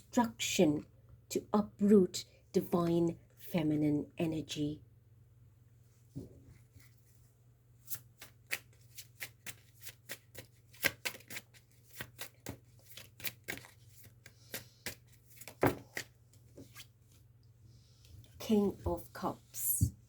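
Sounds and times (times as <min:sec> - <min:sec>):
cards being shuffled: 0:07.9 - 0:16.9.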